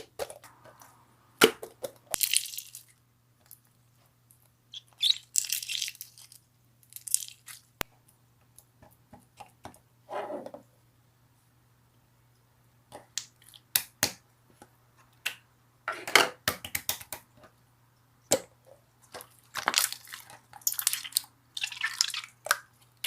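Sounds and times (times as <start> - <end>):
slime squish: 2.1 - 7.7, 19.1 - 23.0
slime crackling and popping: 4.8 - 7.6, 19.2 - 22.7.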